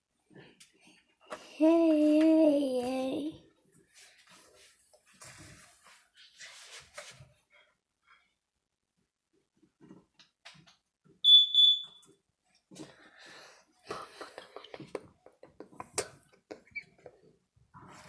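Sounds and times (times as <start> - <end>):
short electronic beeps: 11.2 - 12.0.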